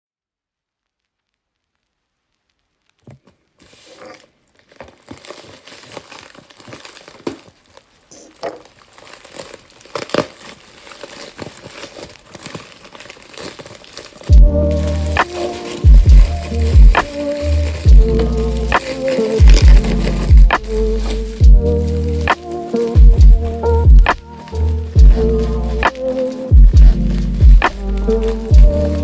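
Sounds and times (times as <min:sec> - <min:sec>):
packaging crinkling and tearing: 0:02.5 - 0:29.0
loud music: 0:14.3 - 0:29.0.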